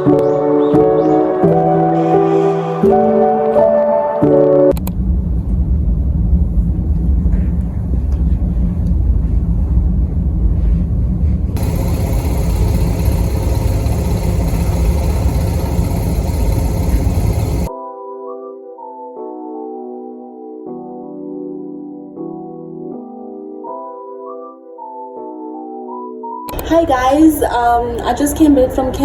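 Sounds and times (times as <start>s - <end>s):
vehicle rumbling in motion: 4.8s - 17.7s.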